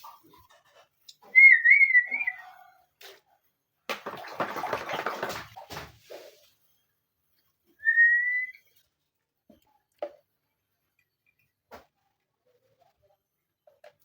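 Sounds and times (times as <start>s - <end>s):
wavering whistle: 7.8s - 8.7s.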